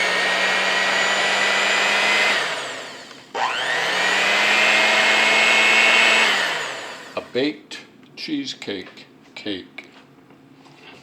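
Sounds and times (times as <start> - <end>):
electric kitchen mixer whining: 0.0 - 7.3.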